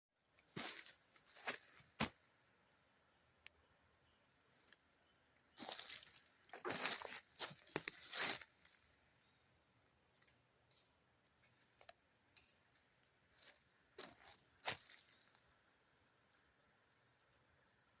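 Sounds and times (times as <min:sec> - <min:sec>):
crunching and rustling: 0:00.6 - 0:02.2, 0:05.6 - 0:08.8, 0:13.3 - 0:15.5
faint ticks and crackles: 0:03.0 - 0:18.0.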